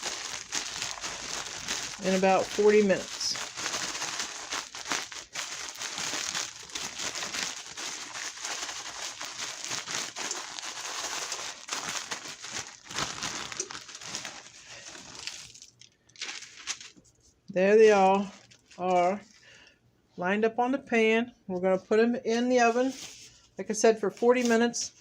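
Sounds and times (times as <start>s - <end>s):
bag of breadcrumbs crinkling: 0.0s - 17.2s, 17.9s - 19.6s.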